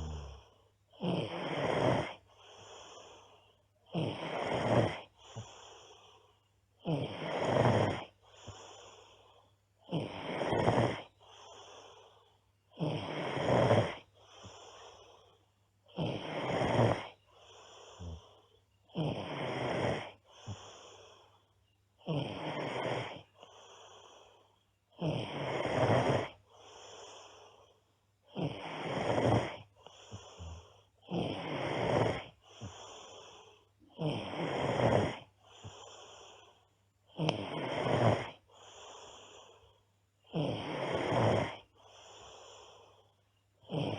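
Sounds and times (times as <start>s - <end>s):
girl snoring loudly: 0.0s - 3.1s, 3.9s - 5.6s, 6.8s - 9.0s, 9.8s - 11.9s, 12.7s - 14.9s, 15.9s - 21.0s, 22.0s - 23.3s, 25.0s - 26.4s, 28.3s - 36.4s, 37.1s - 39.4s, 40.2s - 42.6s, 43.6s - 43.9s.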